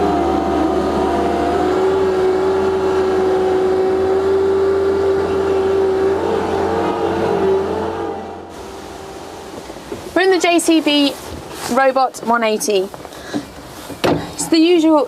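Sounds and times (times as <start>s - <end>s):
loader engine whining: 0.0s - 11.2s.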